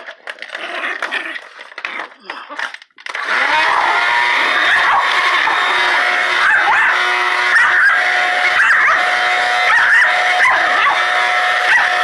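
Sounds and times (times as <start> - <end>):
vacuum cleaner motor whine: 3.1 - 12.0
dog yipping and whining: 3.5 - 12.0.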